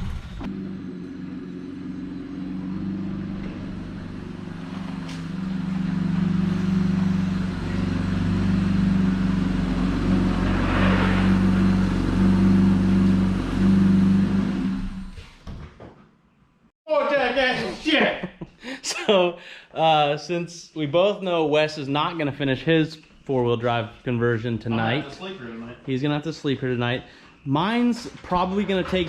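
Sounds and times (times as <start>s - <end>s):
vehicle engine running: 0.0s - 15.1s.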